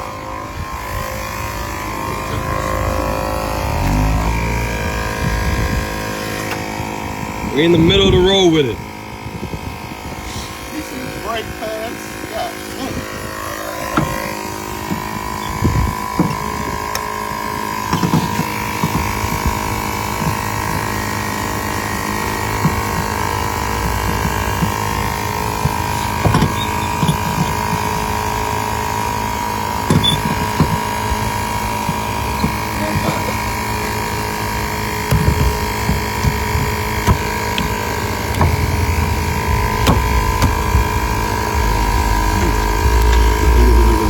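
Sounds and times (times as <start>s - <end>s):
steady mechanical hum: 0.0s - 44.0s
knocks and clanks: 17.8s - 28.8s, 29.6s - 44.0s.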